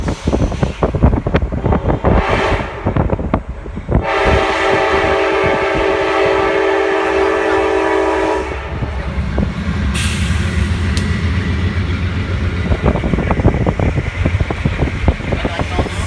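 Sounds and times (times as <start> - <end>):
low rumble of moving train: 0.0 - 16.0
train horn long blast: 1.9 - 3.2, 4.0 - 8.8.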